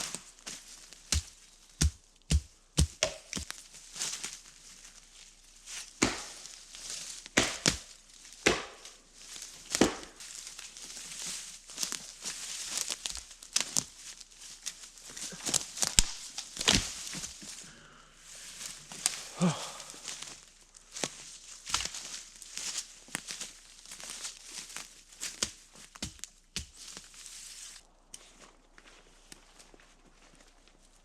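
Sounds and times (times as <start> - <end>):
dry brush rustling: 0.0 - 31.0
sticks cracking: 1.1 - 3.6, 6.0 - 6.6, 7.2 - 9.0, 9.6 - 10.2, 15.1 - 17.6.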